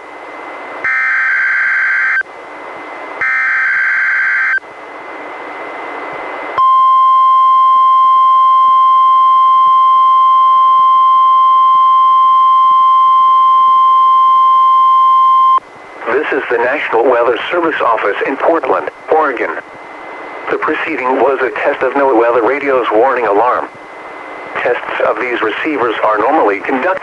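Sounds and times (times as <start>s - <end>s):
steady warning alarm tone: 0.8s - 2.3s, 3.2s - 4.6s
radio hiss: 15.6s - 27.0s.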